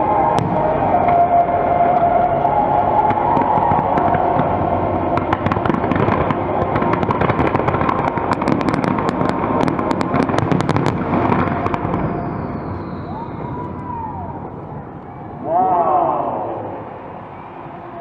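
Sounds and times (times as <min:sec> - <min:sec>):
rumble of explosions: 0:00.0 - 0:18.0
fireworks crackling: 0:03.0 - 0:15.8.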